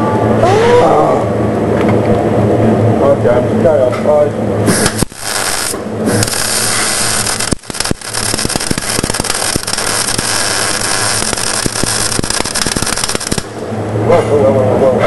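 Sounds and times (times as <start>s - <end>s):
welding arc crackling: 4.7s - 13.8s.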